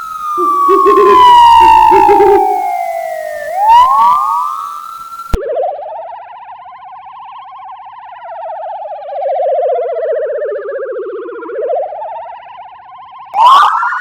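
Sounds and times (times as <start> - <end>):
police siren wailing: 0.0 - 5.4, 13.4 - 14.0.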